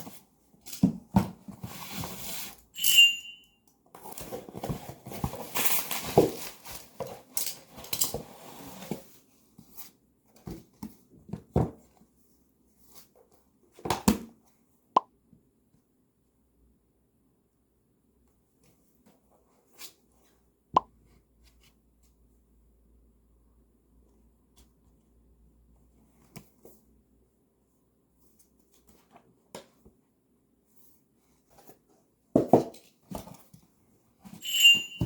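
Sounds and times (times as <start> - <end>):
short ringing clink: 2.8 - 3.6, 34.4 - 35.0.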